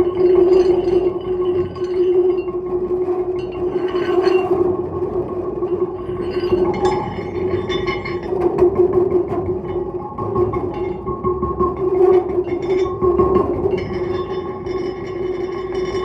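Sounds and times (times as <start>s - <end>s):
stone plates ringing: 6.0s - 16.0s.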